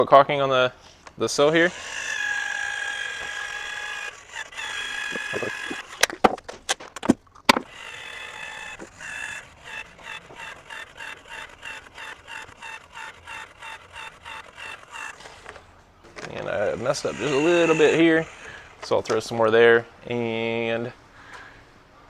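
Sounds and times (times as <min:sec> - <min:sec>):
caulk gun squeaking: 0:01.5 - 0:15.7, 0:16.3 - 0:19.2.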